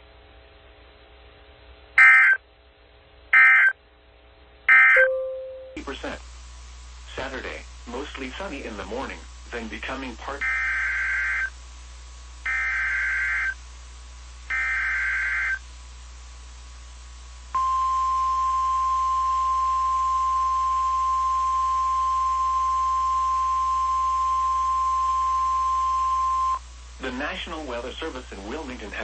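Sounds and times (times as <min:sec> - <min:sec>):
steady high alarm tone: 0:14.5 - 0:15.6.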